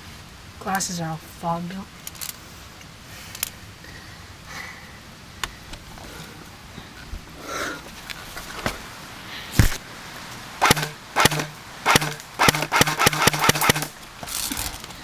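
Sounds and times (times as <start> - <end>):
airsoft gun shots cracking: 10.6 - 14.0.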